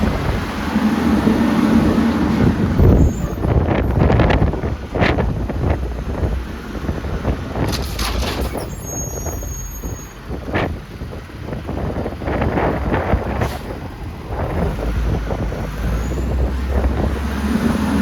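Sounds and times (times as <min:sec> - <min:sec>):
garbage truck running: 0:00.0 - 0:18.0
wind on microphone: 0:00.0 - 0:18.0
high squeal: 0:07.9 - 0:10.2.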